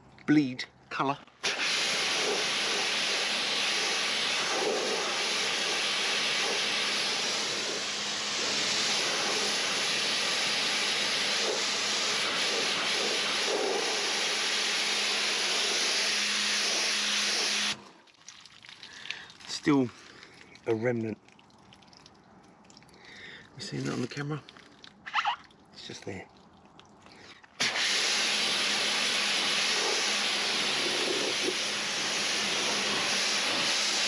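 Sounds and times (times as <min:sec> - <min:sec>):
pressure washer spraying water: 0:01.4 - 0:17.8, 0:27.6 - 0:34.0.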